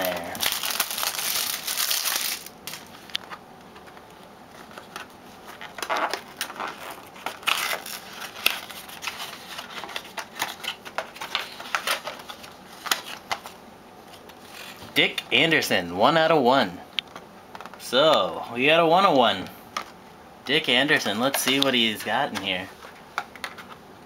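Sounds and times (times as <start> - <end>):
packaging crinkles: 0.0 - 3.4, 5.5 - 14.8
packaging rustling and tearing: 0.0 - 3.4, 4.6 - 14.8.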